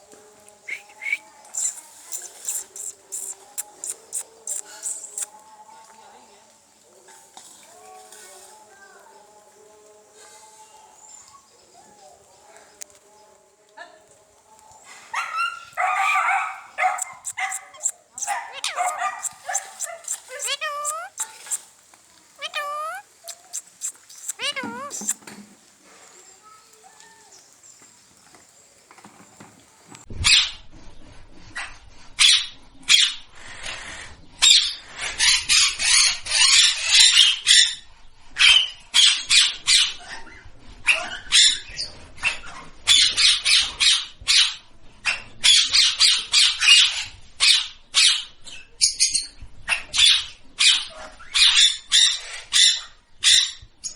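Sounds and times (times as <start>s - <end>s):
parrot squawking: 1.0s - 5.3s, 16.0s - 21.7s, 22.4s - 25.2s.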